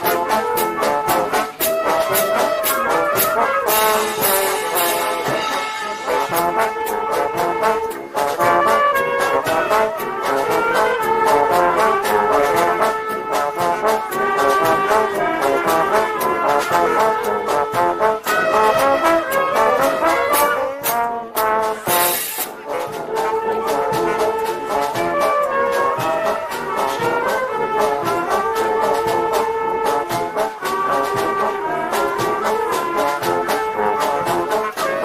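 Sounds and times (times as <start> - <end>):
brass band playing a march: 0.0 - 35.0
drum strokes: 0.0 - 35.0.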